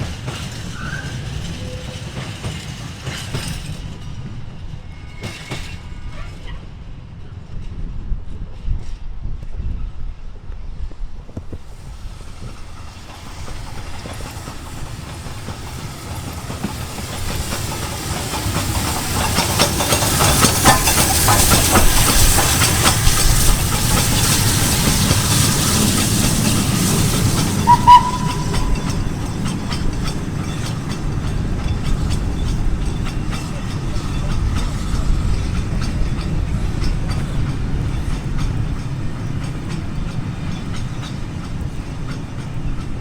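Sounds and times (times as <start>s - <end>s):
train wheels clattering: 0.0s - 6.6s, 10.9s - 43.0s
train hiss: 0.0s - 9.0s, 9.6s - 43.0s
sharp high note: 27.6s - 29.3s.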